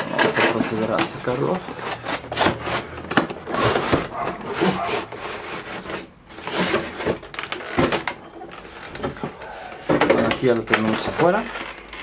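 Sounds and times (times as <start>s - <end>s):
cardboard rubbing and scraping: 0.0s - 7.7s.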